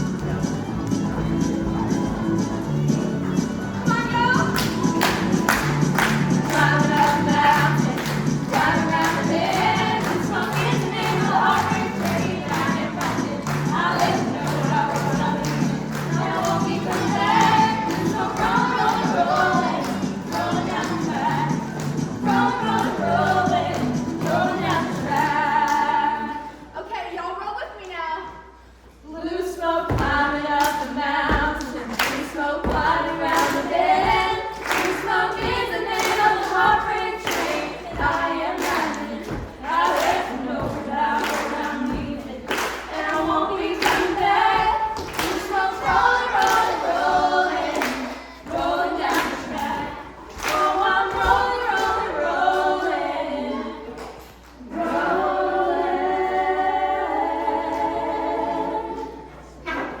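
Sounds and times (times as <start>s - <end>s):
steady thumping beat: 0.0s - 25.0s, 31.2s - 31.8s, 32.6s - 33.3s, 33.9s - 41.0s
several voices singing: 0.0s - 26.8s, 29.1s - 60.0s.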